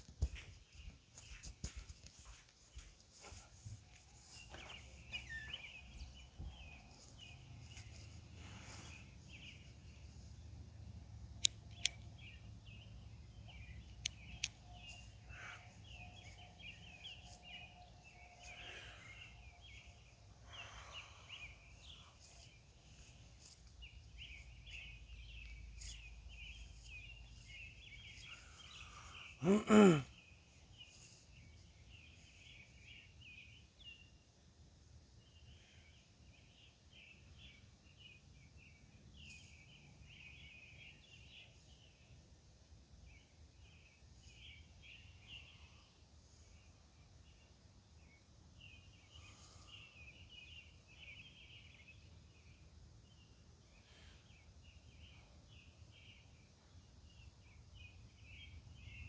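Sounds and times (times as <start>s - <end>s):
high irregular chirping chorus: 3.2s - 10.4s
sharp clicks: 11.4s - 12.1s.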